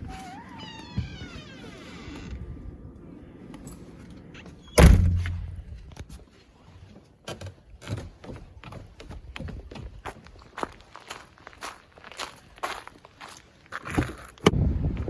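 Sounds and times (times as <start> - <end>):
door shutting with heavy thud: 4.8 - 5.6.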